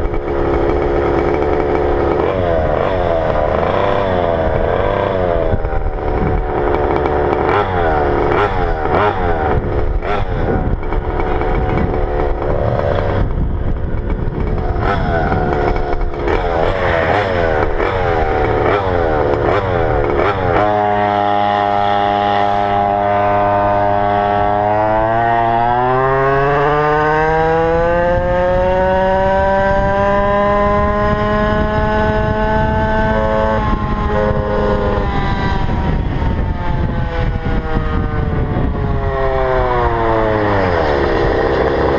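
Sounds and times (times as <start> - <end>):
two-stroke scooter engine: 0.0 - 41.9.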